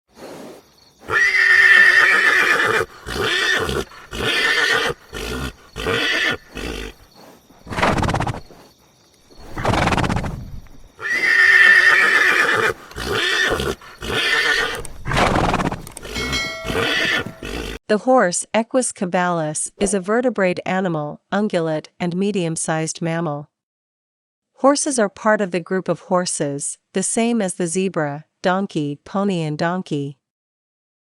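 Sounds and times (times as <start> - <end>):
horse snorting: 0.1 - 17.8
horse whinnying: 1.0 - 7.1, 7.7 - 8.5, 9.4 - 17.8.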